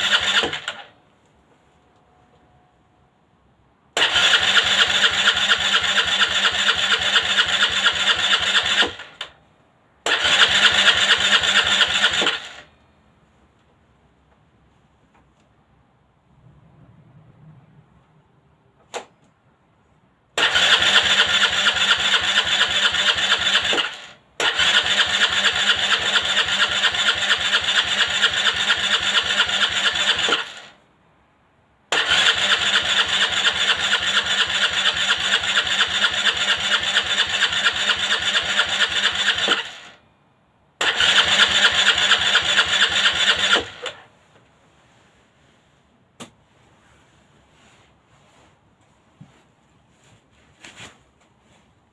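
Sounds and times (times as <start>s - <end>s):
scooter starter cranking engine: 0.0s - 1.0s, 4.0s - 9.4s, 10.0s - 12.7s, 20.4s - 30.8s, 31.9s - 40.0s, 40.8s - 44.1s.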